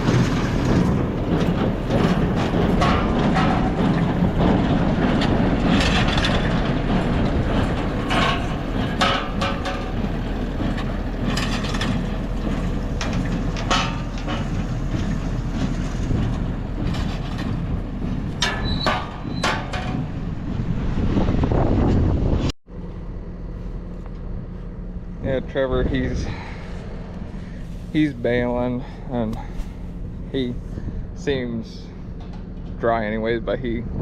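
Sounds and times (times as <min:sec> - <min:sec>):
baler clunking and rattling: 0:00.0 - 0:22.3, 0:31.8 - 0:32.9
tractor engine rumble: 0:00.0 - 0:34.0.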